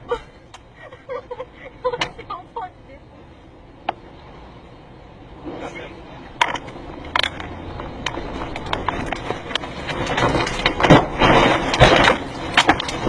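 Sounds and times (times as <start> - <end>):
roaring tornado wind: 0.0 - 13.0
debris hitting a car: 5.4 - 13.0.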